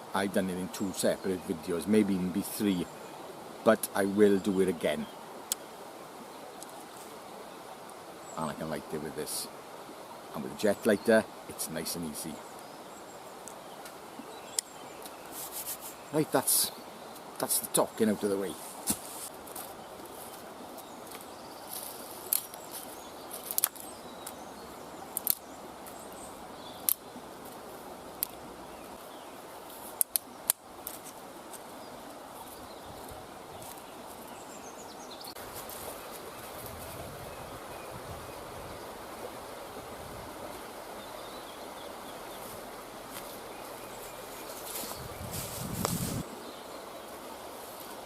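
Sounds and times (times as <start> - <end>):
outdoor background hiss: 0.0 - 48.0
rustling: 15.0 - 16.2, 18.5 - 24.4, 35.3 - 37.1, 42.4 - 46.4
sticks clicking and snapping: 23.4 - 24.4, 25.1 - 25.4, 29.9 - 31.0.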